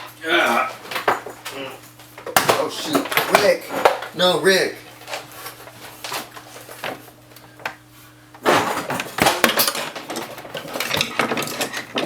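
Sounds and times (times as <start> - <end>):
clattering and rattling: 8.4 - 12.0.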